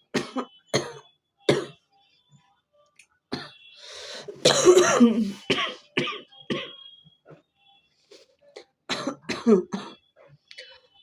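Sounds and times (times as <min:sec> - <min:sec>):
person coughing with phlegm: 0:00.1 - 0:01.8, 0:04.4 - 0:06.8, 0:08.9 - 0:10.0.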